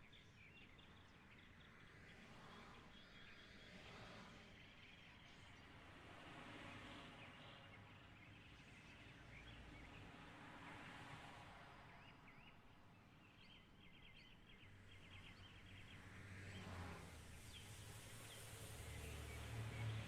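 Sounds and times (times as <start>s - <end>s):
quiet outdoor ambience: 0.0s - 20.0s.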